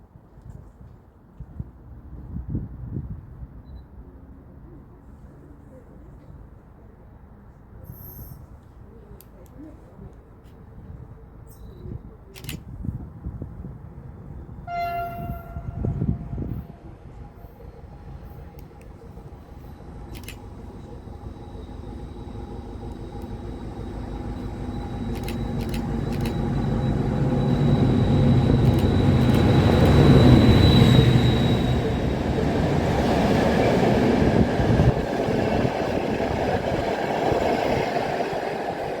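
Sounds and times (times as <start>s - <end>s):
train rail rumble: 11.8s - 39.0s
high-pitched squeal: 19.5s - 35.0s.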